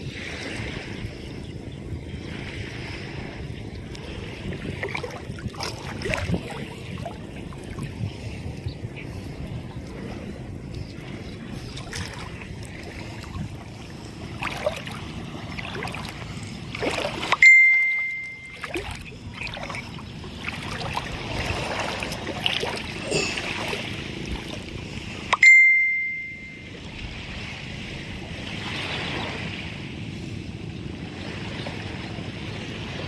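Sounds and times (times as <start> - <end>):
waves washing on beach: 0.0 - 33.0
wind: 0.0 - 33.0
bright ding: 17.3 - 18.8, 25.3 - 26.8.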